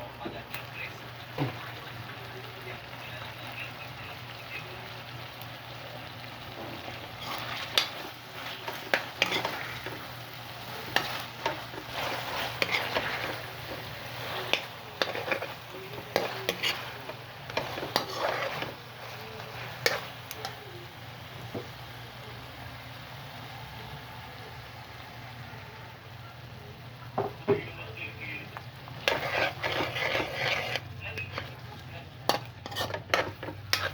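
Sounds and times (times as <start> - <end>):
food sizzling in a frying pan: 0.0 - 33.9
utensil scraping a pan: 6.4 - 20.6, 28.9 - 33.9.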